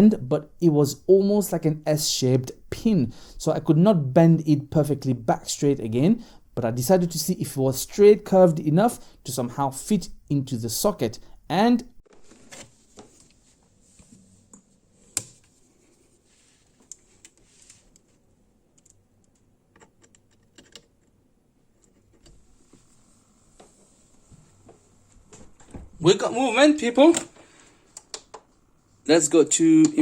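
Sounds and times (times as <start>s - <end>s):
faint steady hiss: 0.0s - 12.0s, 21.1s - 30.0s.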